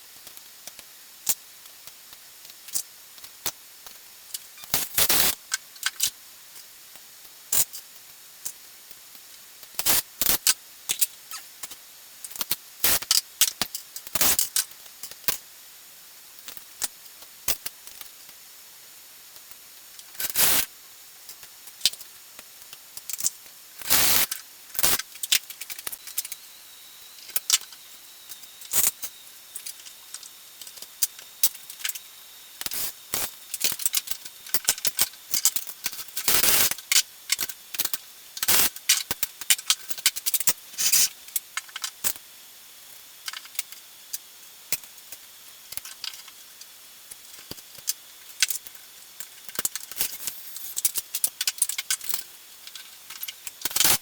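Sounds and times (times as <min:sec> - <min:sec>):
small metal parts clattering: 0:49.5 - 0:54.0.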